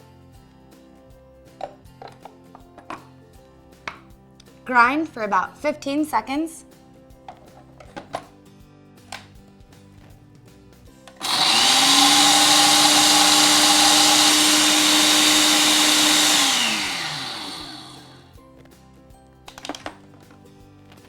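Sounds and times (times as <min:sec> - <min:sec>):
coffee grinder motor whining: 0:11.2 - 0:18.3.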